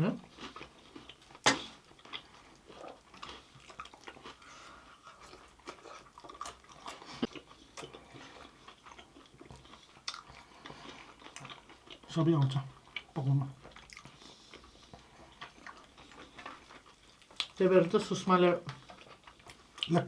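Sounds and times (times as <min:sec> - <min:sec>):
person chewing crunchy food: 0:00.2 - 0:20.0
wet mouth clicks: 0:01.4 - 0:01.8.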